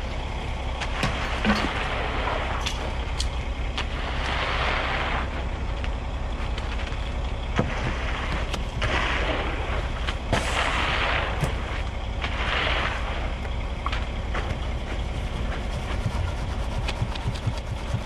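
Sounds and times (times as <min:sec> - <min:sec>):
concrete mixer truck rumble: 0:00.0 - 0:18.0
wet concrete pouring and scraping: 0:00.7 - 0:18.0.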